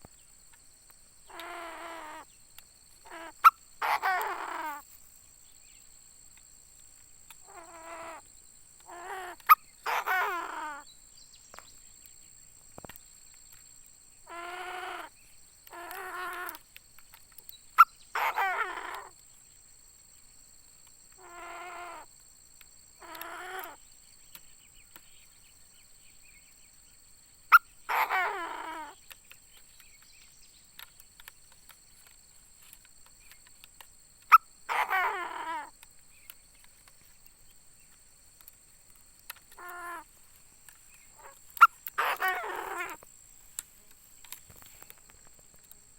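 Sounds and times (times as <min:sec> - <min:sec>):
francolin harsh ringing calls: 0:01.3 - 0:04.9, 0:07.4 - 0:11.0, 0:14.2 - 0:16.7, 0:17.6 - 0:19.2, 0:21.2 - 0:22.1, 0:27.5 - 0:29.1, 0:34.2 - 0:36.6, 0:39.3 - 0:43.4.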